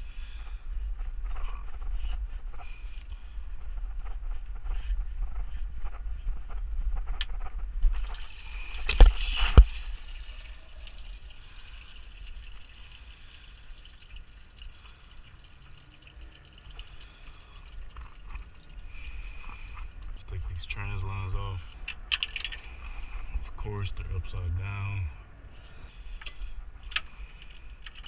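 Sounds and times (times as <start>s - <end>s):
coolant trickling and dripping: 7.9s - 28.0s.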